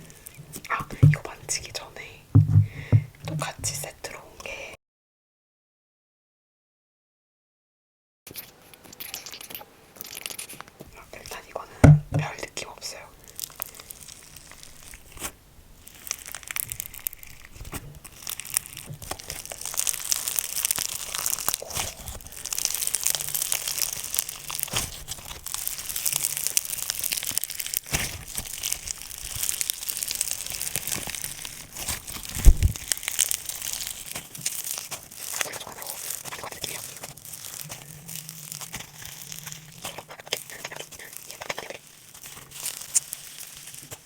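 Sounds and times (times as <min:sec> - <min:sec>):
low thump: 0:02.4 - 0:03.5, 0:11.8 - 0:12.3
slime squished by hand: 0:02.4 - 0:03.9, 0:13.2 - 0:44.0.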